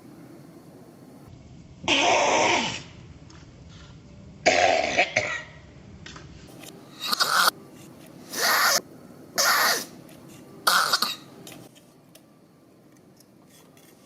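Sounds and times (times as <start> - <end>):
monkey coughing: 9.4 - 10.0, 10.7 - 11.3.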